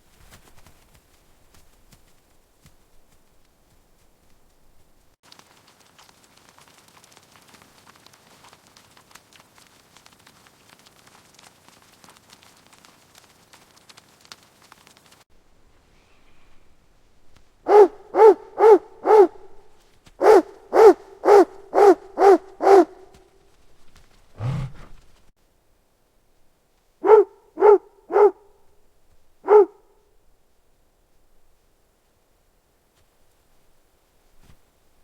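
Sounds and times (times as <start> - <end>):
large dog barking: 17.7 - 23.2, 27.0 - 28.6, 29.4 - 29.9.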